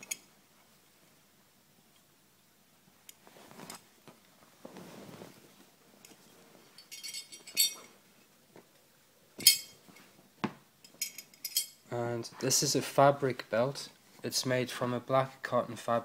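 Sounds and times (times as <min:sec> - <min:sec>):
soft rustling: 0:03.1 - 0:12.8
metal belt buckle clinking: 0:06.0 - 0:07.9, 0:09.4 - 0:09.8, 0:10.8 - 0:11.8.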